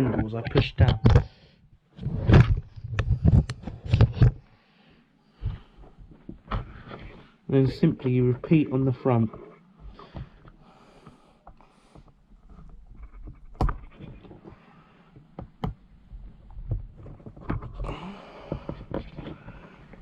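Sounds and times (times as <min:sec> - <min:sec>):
plastic clicks and knocks: 0:00.1 - 0:01.3, 0:02.3 - 0:04.4, 0:12.9 - 0:14.6, 0:15.2 - 0:20.0.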